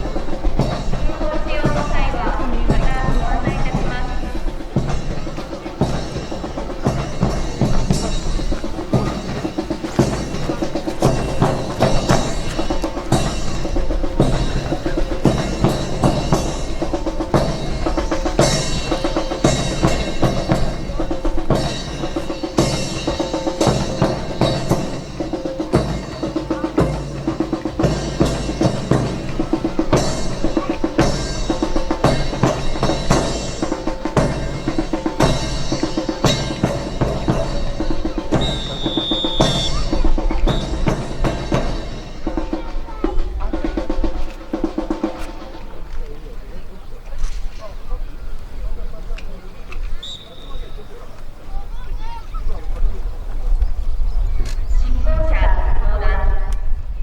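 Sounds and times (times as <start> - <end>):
percussion-heavy music: 0.0 - 48.0.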